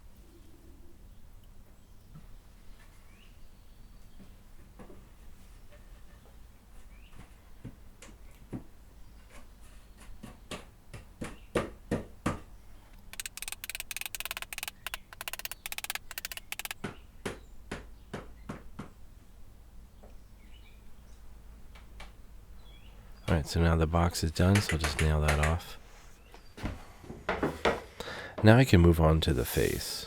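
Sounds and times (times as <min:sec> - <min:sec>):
rapid clattering rattle: 0:13.0 - 0:16.8.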